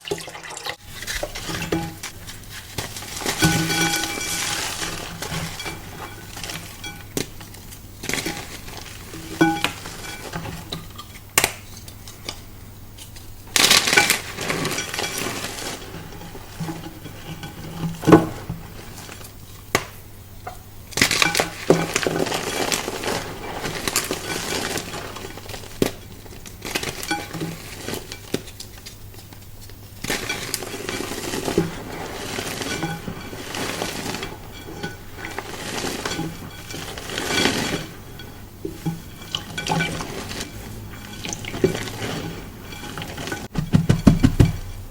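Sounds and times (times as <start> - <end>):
chalk crushing and crunching: 0.8 - 10.4, 21.0 - 44.4.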